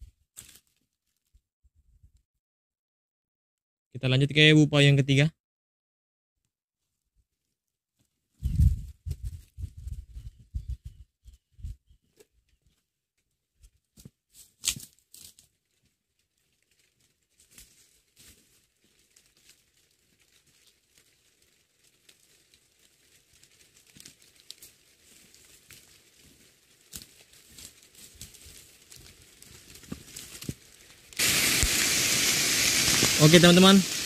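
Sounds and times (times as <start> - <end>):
rain pattering: 18.4 - 34.0.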